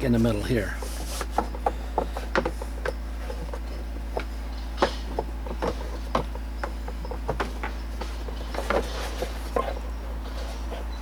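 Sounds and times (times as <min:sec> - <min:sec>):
steady low hum: 0:00.0 - 0:11.0
plastic parts clicking and knocking: 0:01.2 - 0:09.3.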